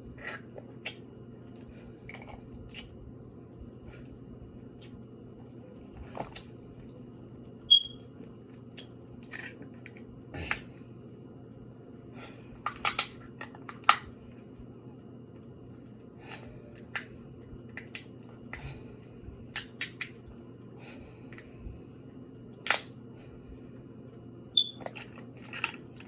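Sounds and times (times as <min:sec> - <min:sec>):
shells cracking: 0:12.6 - 0:14.1, 0:22.6 - 0:22.9.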